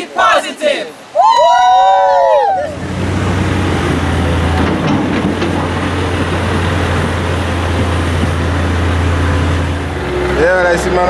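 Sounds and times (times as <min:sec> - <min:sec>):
constant noisy rush: 0:00.0 - 0:11.0
large engine running: 0:02.7 - 0:11.0.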